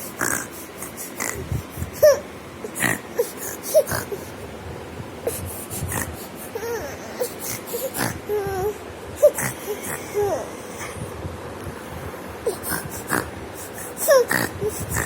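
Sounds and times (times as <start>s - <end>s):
baby crying: 2.0s - 4.3s, 6.5s - 10.6s, 13.8s - 15.0s.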